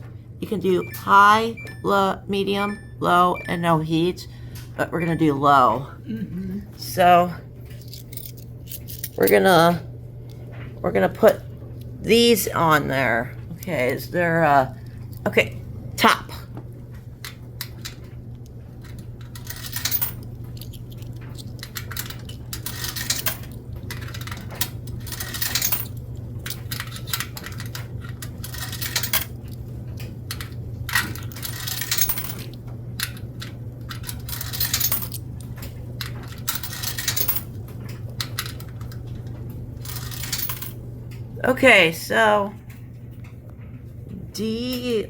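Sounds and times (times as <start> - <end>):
low machine hum: 0.0 - 45.0
coins clinking into slot: 18.8 - 29.4, 30.3 - 37.6, 39.8 - 40.8.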